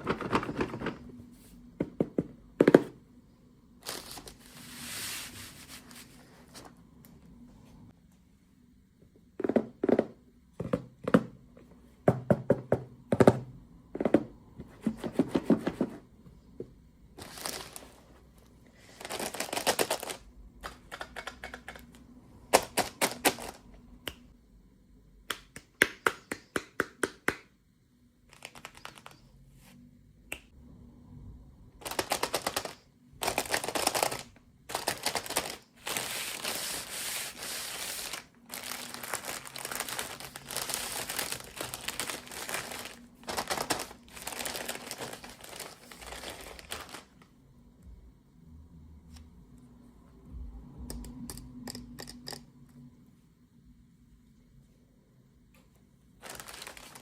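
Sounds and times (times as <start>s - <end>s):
plastic wrapping crinkling: 31.8s - 47.2s, 56.2s - 57.0s.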